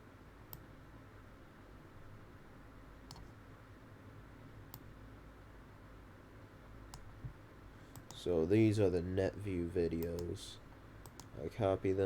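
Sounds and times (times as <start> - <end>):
low steady hum: 0.0 - 12.0
faint computer clicks: 3.0 - 3.4, 6.9 - 8.3, 9.3 - 10.4, 11.0 - 11.4.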